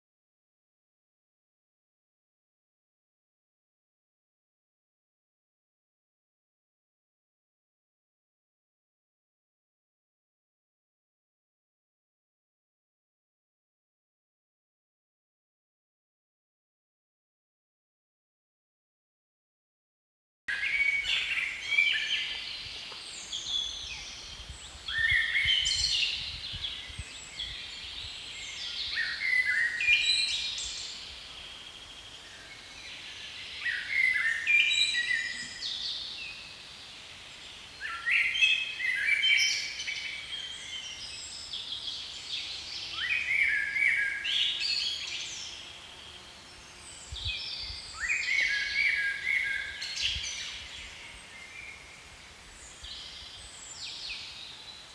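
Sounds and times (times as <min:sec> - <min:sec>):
faint outdoor background noise: 0:20.5 - 0:54.9
songbird singing: 0:20.5 - 0:54.9.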